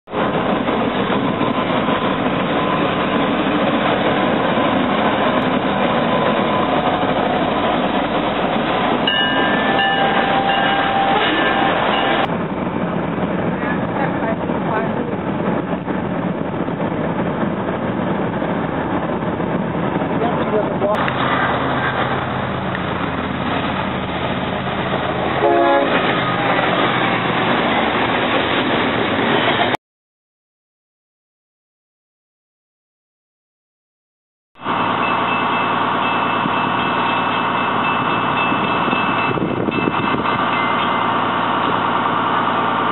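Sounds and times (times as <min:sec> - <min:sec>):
train wheels rumbling on rail: 0:00.1 - 0:29.8, 0:34.6 - 0:42.9
train horn blast: 0:25.4 - 0:26.1.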